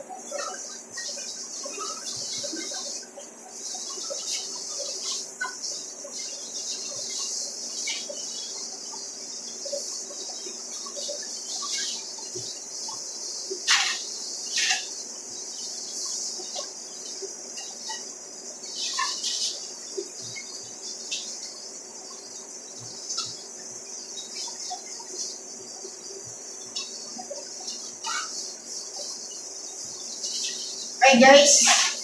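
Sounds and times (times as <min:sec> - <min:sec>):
high-pitched insect chirring: 0:00.1 - 0:32.0.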